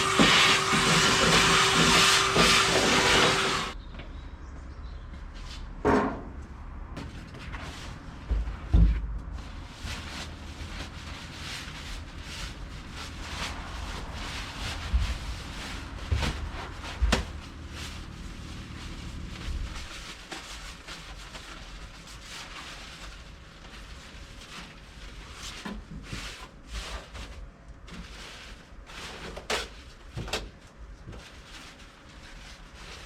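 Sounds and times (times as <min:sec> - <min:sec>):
rustling: 0:09.4 - 0:29.9.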